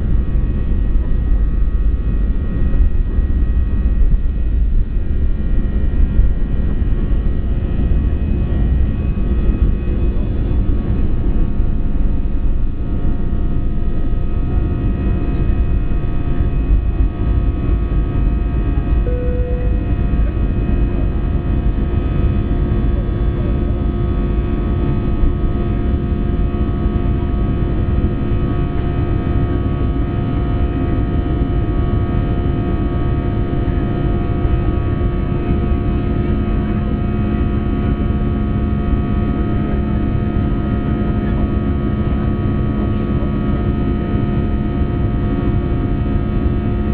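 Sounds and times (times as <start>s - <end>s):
jet engine cabin rumble: 0.0s - 46.9s
faint steady tones: 18.7s - 24.0s.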